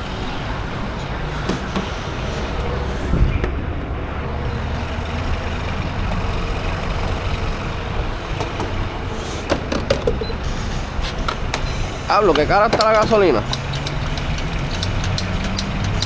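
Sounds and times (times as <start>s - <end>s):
motor vehicle rumbling: 0.0s - 16.0s
sharp clicks: 12.4s - 16.0s.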